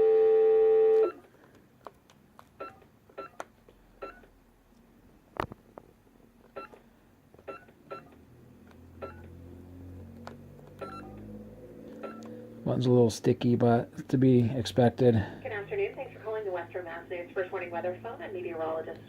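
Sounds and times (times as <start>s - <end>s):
phone dial tone: 0.0s - 1.2s, 10.8s - 11.3s
short keypad beeps: 10.8s - 11.2s.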